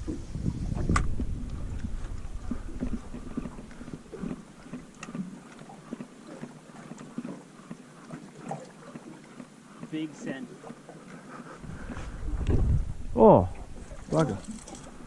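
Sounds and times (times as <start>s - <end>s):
wind-like rumble: 0.0s - 4.1s, 11.6s - 15.0s
water splashes: 0.0s - 15.0s.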